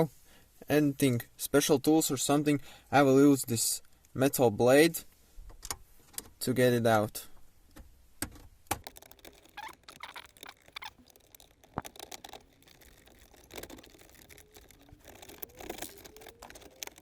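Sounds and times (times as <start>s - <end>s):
small squeaks: 8.7s - 17.0s.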